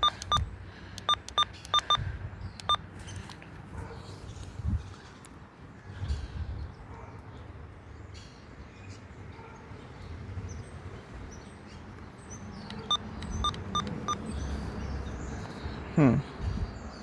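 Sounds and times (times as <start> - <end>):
short electronic keypad beeps: 0.0 - 0.4, 1.0 - 2.0, 2.6 - 2.8, 12.9 - 14.2.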